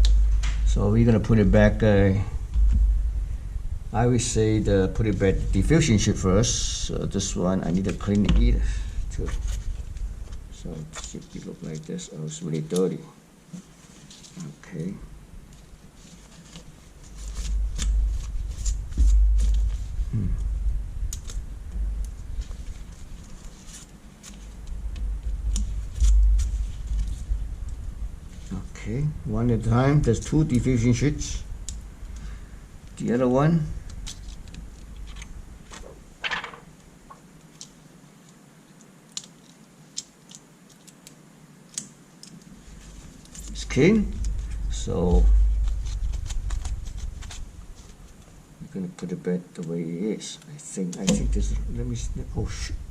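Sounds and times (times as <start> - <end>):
low rumble: 0.0 - 7.6, 17.2 - 23.5, 24.5 - 35.6, 43.4 - 48.5, 51.2 - 52.9
plastic sheet rustling wipe: 5.2 - 12.0, 15.5 - 28.7, 42.5 - 48.5
plastic sheet crinkling: 15.6 - 20.2, 33.8 - 37.6, 42.2 - 48.4.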